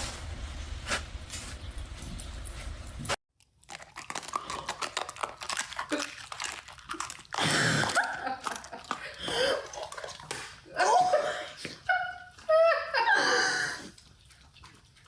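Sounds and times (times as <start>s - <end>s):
crunching and chewing: 3.4s - 10.7s.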